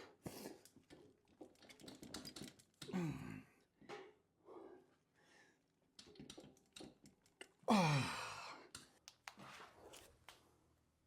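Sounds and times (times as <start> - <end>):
man grunting with effort: 7.7 - 8.5.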